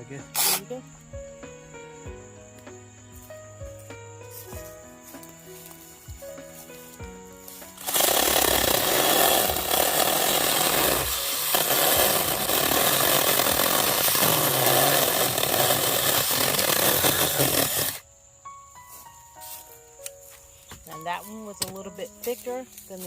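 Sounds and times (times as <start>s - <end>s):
small chainsaw cutting wood: 0.0s - 0.8s, 7.6s - 18.0s.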